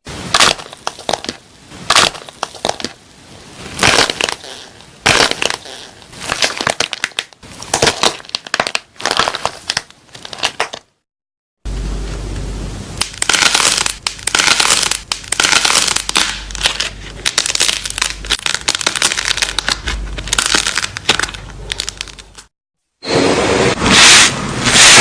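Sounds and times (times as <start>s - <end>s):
crunchy slime squeezed by hand: 3.8s - 10.8s, 13.0s - 22.4s
loud noisy sound: 23.0s - 25.0s.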